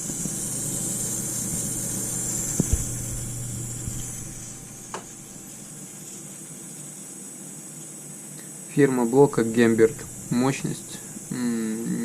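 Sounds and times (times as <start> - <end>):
power supply hissing whistle: 0.0 - 5.7, 9.4 - 11.4
mains hum: 0.0 - 12.0.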